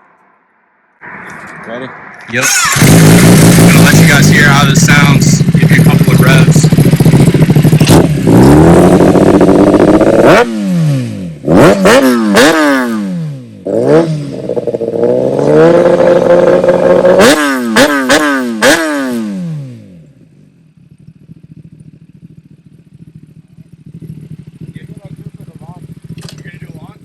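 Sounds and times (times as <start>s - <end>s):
motorcycle engine revving: 1.2s - 27.0s
motorcycle throttle blips: 2.1s - 19.8s, 20.8s - 27.0s.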